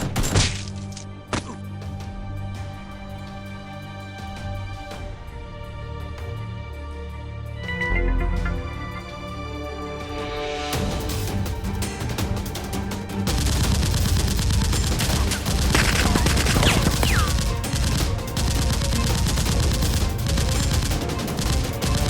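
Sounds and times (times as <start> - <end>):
background music: 0.0 - 22.0
rapid gunfire: 13.2 - 22.0.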